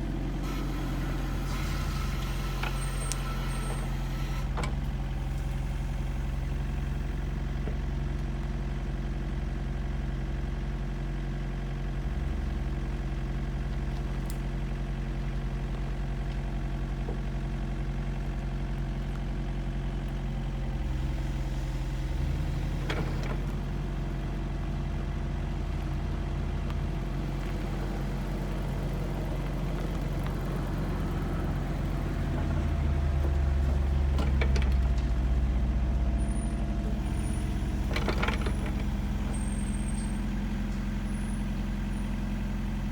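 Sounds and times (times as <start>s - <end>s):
heavy machine engine running: 0.0s - 7.9s, 20.0s - 42.9s.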